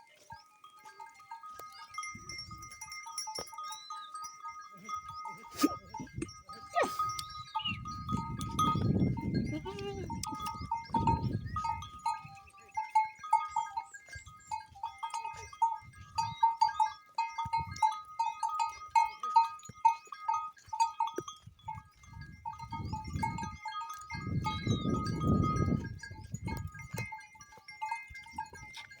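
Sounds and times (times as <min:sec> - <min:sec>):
goats bleating: 0:09.4 - 0:10.3.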